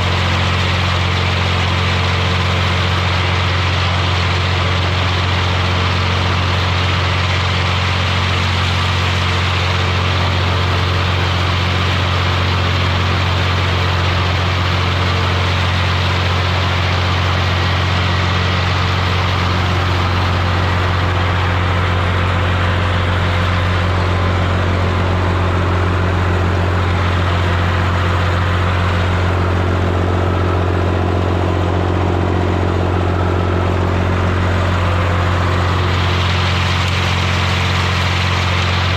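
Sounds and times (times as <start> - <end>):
tractor engine running: 0.0 - 38.9.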